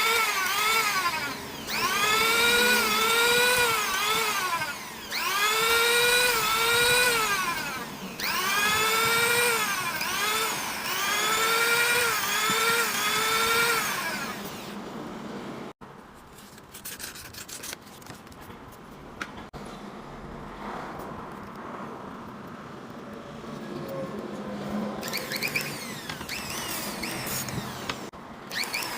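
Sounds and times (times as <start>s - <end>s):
power sander whining: 0.0s - 14.8s, 25.0s - 28.9s.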